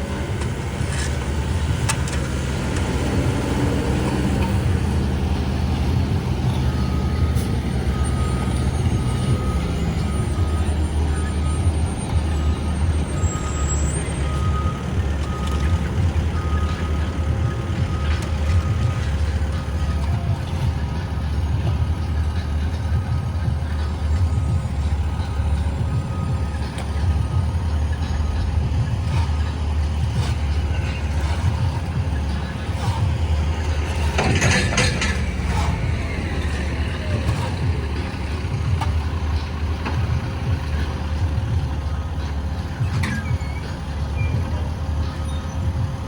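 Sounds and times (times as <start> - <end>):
diesel engines rumbling: 0.0 - 46.0
back-up alarm beeping: 24.3 - 39.4.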